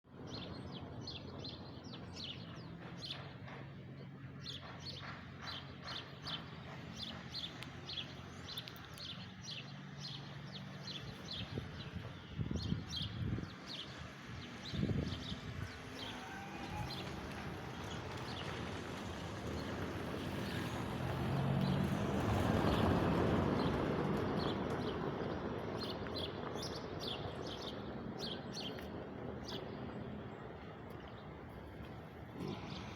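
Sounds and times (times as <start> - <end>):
small birds chirping: 0.3 - 20.8
vehicle passing: 2.5 - 25.7, 27.4 - 32.9.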